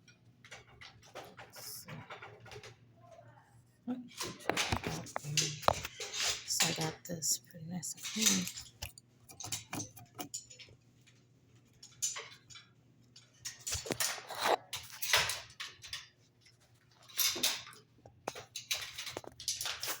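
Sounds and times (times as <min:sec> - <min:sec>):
hand tools clicking and knocking: 0:04.2 - 0:07.1, 0:07.8 - 0:10.8, 0:11.7 - 0:16.2, 0:17.0 - 0:20.0.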